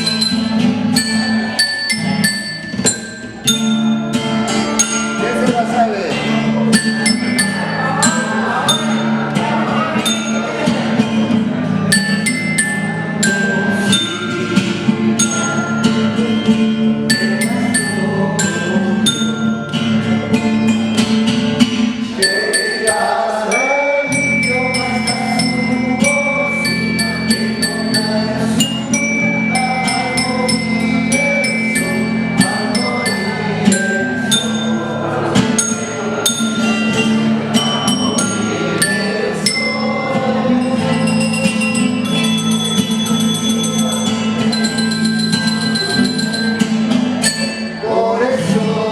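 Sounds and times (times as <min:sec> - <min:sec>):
tuned tubes struck with spoons: 0:00.0 - 0:05.7, 0:11.9 - 0:16.4, 0:22.2 - 0:47.9.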